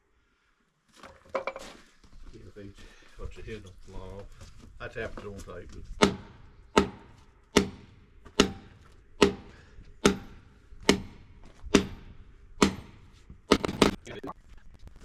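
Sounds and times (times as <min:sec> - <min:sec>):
hammer striking steel anchor: 0:06.0 - 0:14.0.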